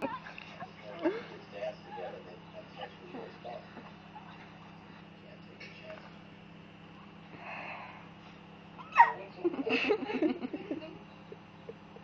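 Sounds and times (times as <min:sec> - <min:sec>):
squeaky hiccup: 0:08.8 - 0:09.2
choppy laughter: 0:09.5 - 0:12.0.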